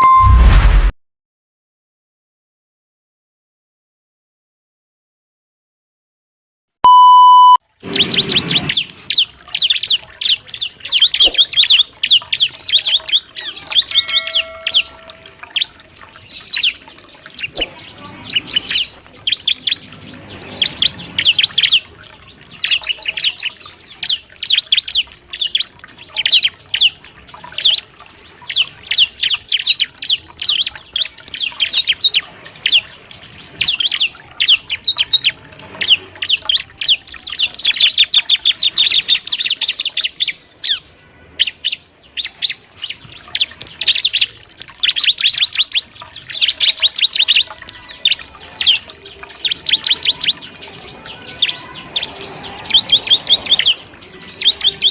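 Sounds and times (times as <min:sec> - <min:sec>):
short electronic beep: 0:00.0 - 0:00.9, 0:06.8 - 0:07.6
bird singing high sharp chirps: 0:06.9 - 0:54.9.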